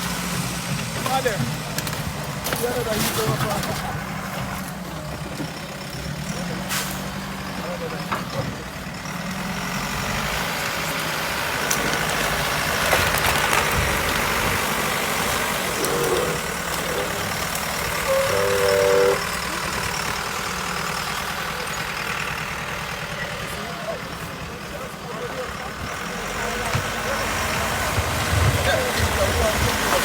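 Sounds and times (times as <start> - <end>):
truck engine idling: 0.0 - 30.0
brief pitched tone: 17.9 - 19.2.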